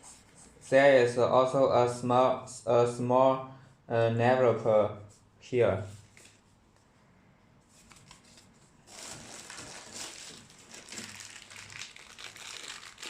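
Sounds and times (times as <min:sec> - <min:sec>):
packaging crinkling and rustling: 0:07.8 - 0:13.0.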